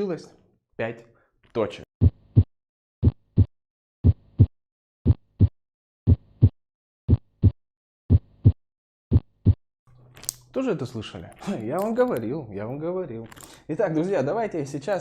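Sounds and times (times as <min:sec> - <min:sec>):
heartbeat: 0:02.0 - 0:09.6.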